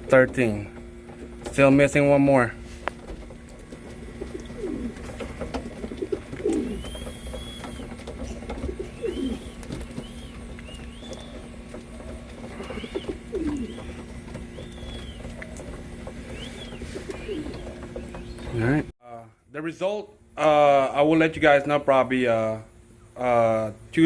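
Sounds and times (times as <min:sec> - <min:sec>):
pigeons cooing: 0:02.6 - 0:18.9.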